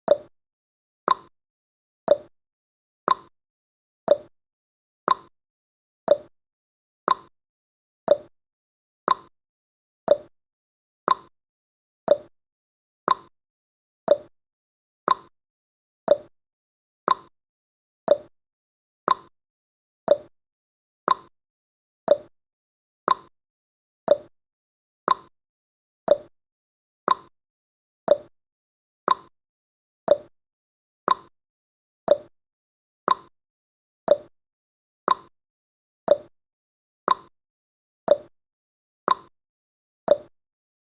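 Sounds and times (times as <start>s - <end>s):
timer ticking: 0.1s - 0.3s, 1.1s - 1.3s, 2.1s - 2.3s, 3.1s - 3.3s, 4.1s - 4.3s, 5.1s - 5.3s, 6.1s - 6.3s, 7.1s - 7.3s, 8.1s - 8.3s, 9.1s - 9.3s, 10.1s - 10.3s, 11.1s - 11.3s, 12.1s - 12.3s, 13.1s - 13.3s, 14.1s - 14.3s, 15.1s - 15.3s, 16.1s - 16.3s, 17.1s - 17.3s, 18.1s - 18.3s, 19.1s - 19.3s, 20.1s - 20.3s, 21.1s - 21.3s, 22.1s - 22.3s, 23.1s - 23.3s, 24.1s - 24.3s, 25.1s - 25.3s, 26.1s - 26.3s, 28.1s - 28.3s, 30.1s - 30.3s, 31.1s - 31.3s, 32.1s - 32.3s, 34.1s - 34.3s, 36.1s - 36.3s, 38.1s - 38.3s, 40.1s - 40.3s.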